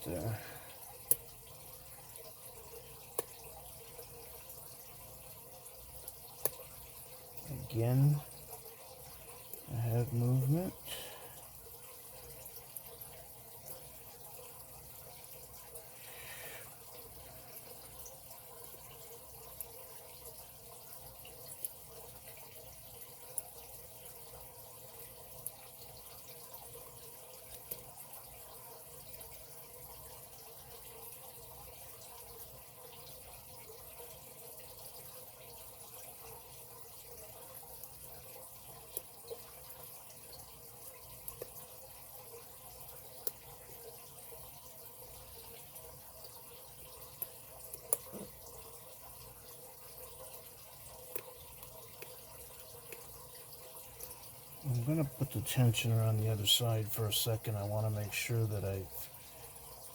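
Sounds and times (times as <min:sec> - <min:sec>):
steady hiss: 0:54.6 - 0:59.1.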